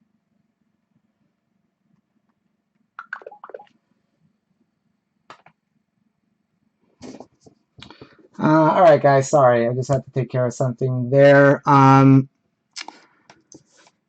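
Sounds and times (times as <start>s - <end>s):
faint low room hum: 0.0s - 14.0s.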